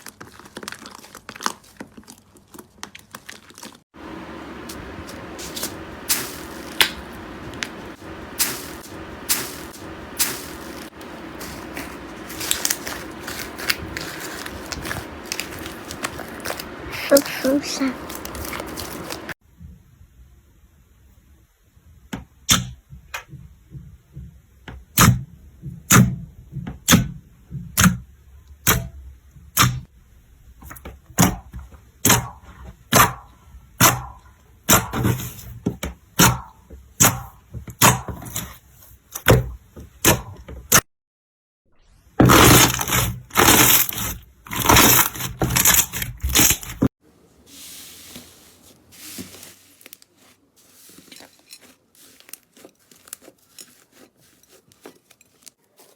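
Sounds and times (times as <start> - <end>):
slime crunching bursts: 0.0 - 3.8, 4.6 - 19.4, 42.2 - 46.8
soft rustling: 4.6 - 19.4, 47.2 - 55.9.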